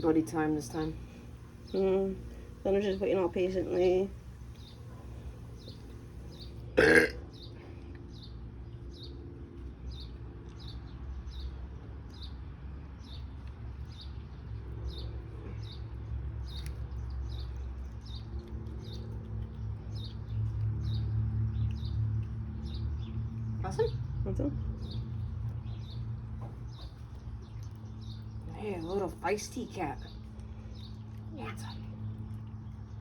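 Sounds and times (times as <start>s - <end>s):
small bird chirping: 0.0s - 6.6s.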